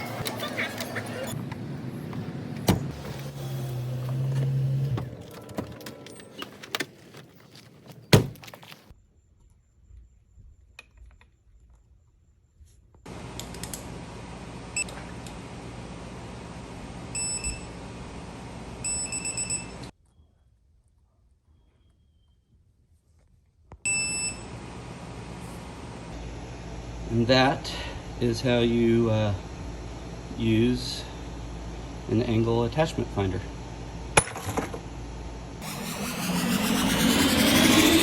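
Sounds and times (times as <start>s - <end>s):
high electronic beeper: 35.6s - 38.0s.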